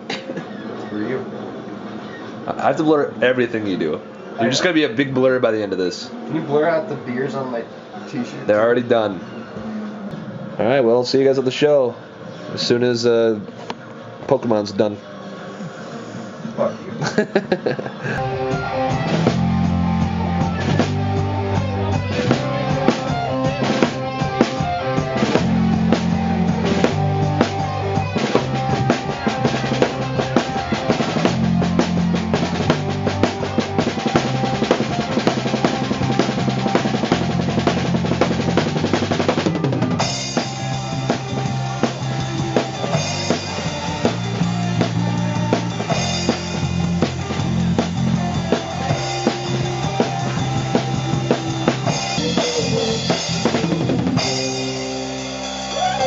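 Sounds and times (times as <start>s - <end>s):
rock music: 18.0s - 56.0s
drum kit: 18.1s - 56.0s
sustained bass line: 18.2s - 56.0s.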